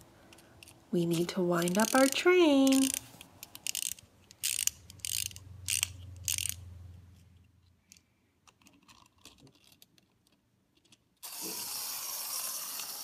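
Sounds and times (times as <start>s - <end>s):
wind-up toy ratchet clicks: 0.3s - 6.6s, 11.2s - 13.0s.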